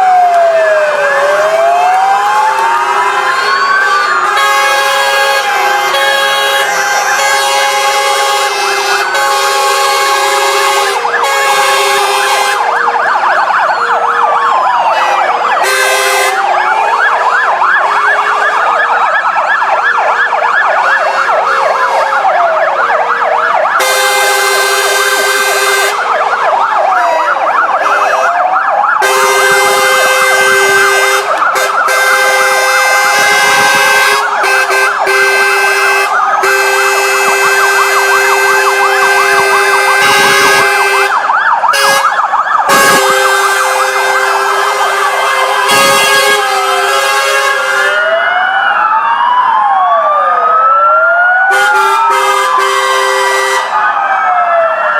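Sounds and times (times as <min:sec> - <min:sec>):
siren fast yelps: 0:00.0 - 0:07.4, 0:08.5 - 0:54.9
siren rising and falling wail: 0:00.0 - 0:54.9
two-note siren tone: 0:26.9 - 0:28.4.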